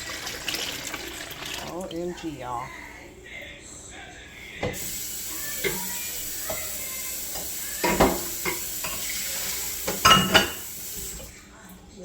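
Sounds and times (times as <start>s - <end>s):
steady hiss: 4.8s - 11.3s
dishes and utensils clinking: 5.5s - 11.3s.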